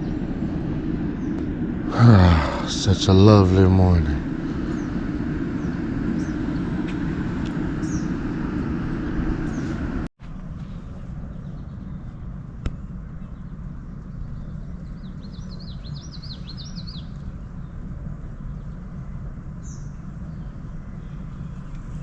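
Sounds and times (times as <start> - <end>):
low background rumble: 0.0 - 22.0
songbird twittering: 7.8 - 8.2, 13.2 - 17.8, 19.6 - 22.0.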